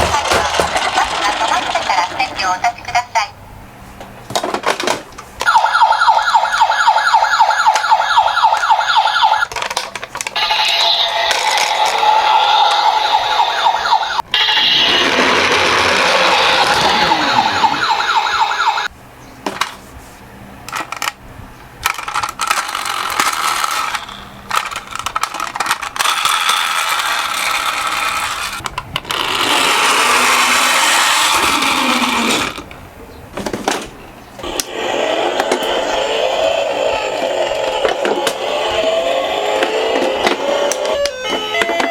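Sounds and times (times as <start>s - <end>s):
toy cars rolling and clattering: 0.0s - 2.6s, 7.5s - 18.4s, 20.7s - 21.2s, 21.8s - 32.8s, 34.4s - 41.9s
toy electronic siren wailing: 5.5s - 9.5s, 10.4s - 18.9s, 29.2s - 32.4s, 34.4s - 41.9s.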